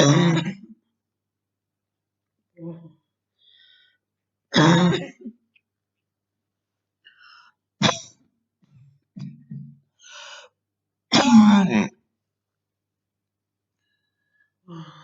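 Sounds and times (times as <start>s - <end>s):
woman coughing: 0.0s - 0.7s, 4.6s - 5.3s, 7.8s - 8.2s, 11.1s - 11.8s
breath in: 3.4s - 4.0s, 10.0s - 10.6s.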